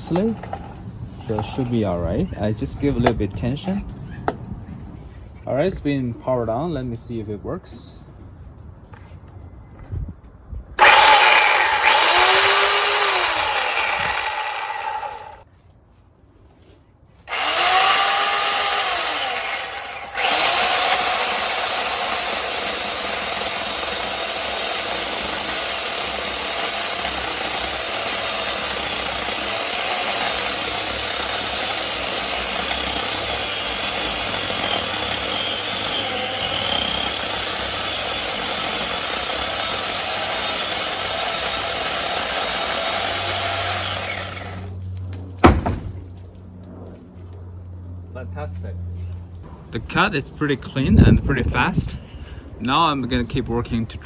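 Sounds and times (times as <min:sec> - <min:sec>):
chainsaw cutting wood: 0:10.8 - 0:15.4, 0:17.3 - 0:44.8
electric chainsaw motor: 0:10.8 - 0:15.4, 0:17.3 - 0:44.8.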